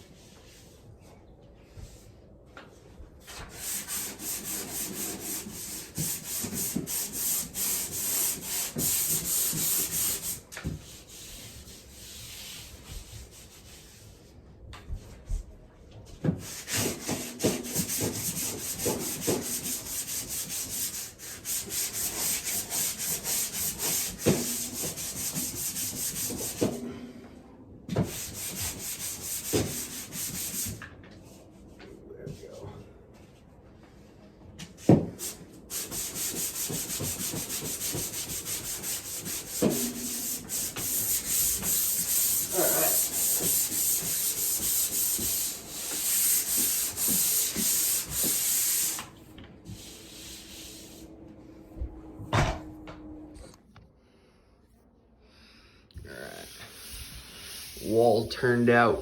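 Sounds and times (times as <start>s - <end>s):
sandpaper scraping on wall: 3.2s - 14.4s, 16.4s - 26.8s, 28.0s - 30.8s, 35.2s - 51.1s, 56.3s - 58.4s.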